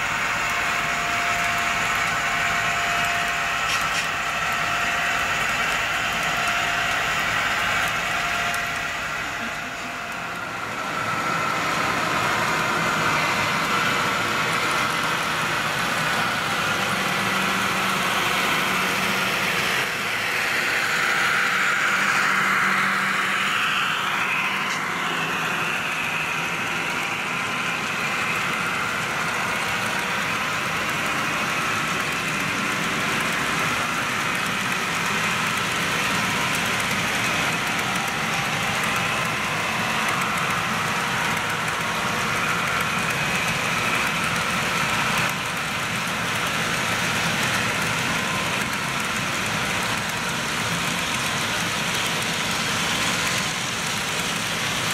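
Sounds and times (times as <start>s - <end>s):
model locomotives droning: 0.0s - 54.9s.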